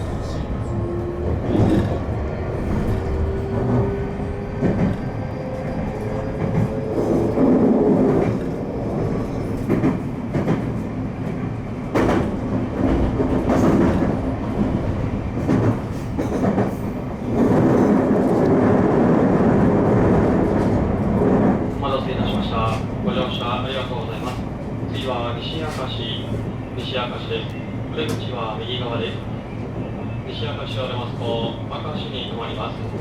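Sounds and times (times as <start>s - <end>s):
train wheels rumbling on rail: 0.0s - 33.0s
clacks over rail joints: 9.5s - 18.6s.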